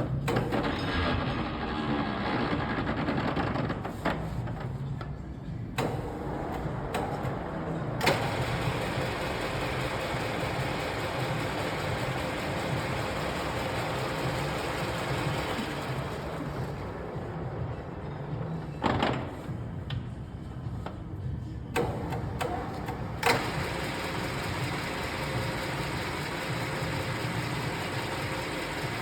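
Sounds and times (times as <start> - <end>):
milling machine whirring: 5.8 - 17.4, 21.8 - 29.0.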